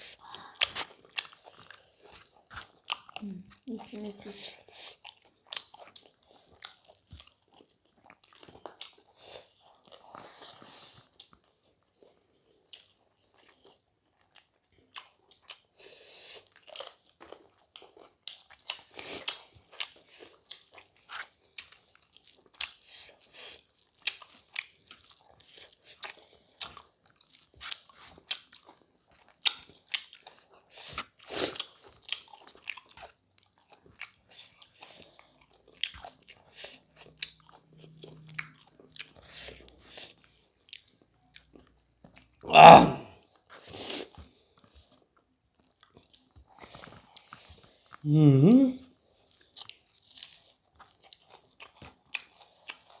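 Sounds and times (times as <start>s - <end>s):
chewing with wet smacking: 0.0s - 42.4s, 43.2s - 48.0s, 48.8s - 53.0s.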